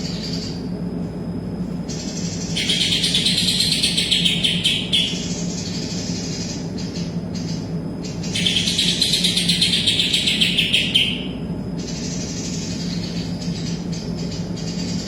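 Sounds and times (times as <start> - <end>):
steady low hum: 0.0 - 15.0
bird singing rapid high notes: 2.6 - 5.4, 8.2 - 13.2.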